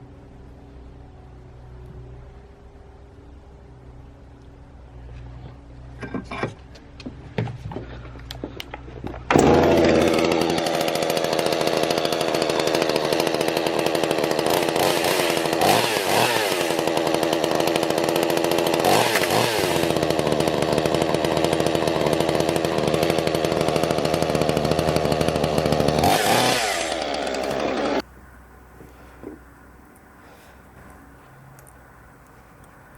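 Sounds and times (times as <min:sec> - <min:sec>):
chainsaw cutting: 0:09.1 - 0:28.1.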